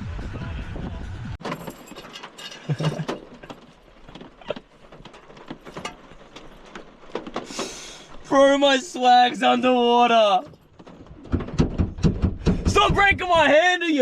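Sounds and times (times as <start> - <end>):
camping gear clicks and knocks: 1.4 - 8.4, 10.2 - 12.8.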